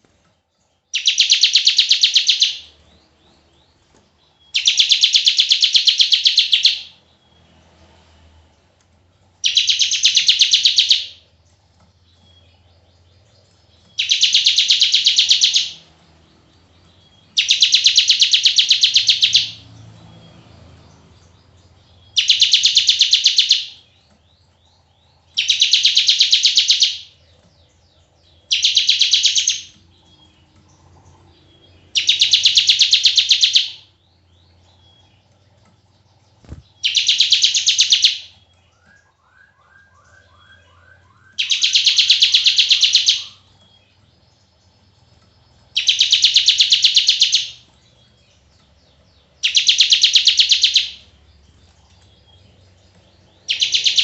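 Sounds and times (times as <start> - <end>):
faint bird chirps: 9.4 - 54.0.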